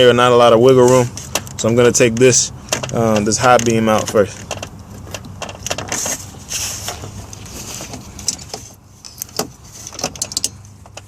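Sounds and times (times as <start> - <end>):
brief rustling: 2.7 - 10.5.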